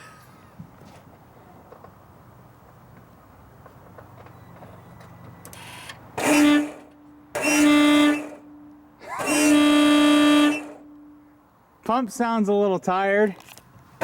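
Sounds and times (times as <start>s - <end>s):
electric air horn blasts: 6.2s - 11.3s.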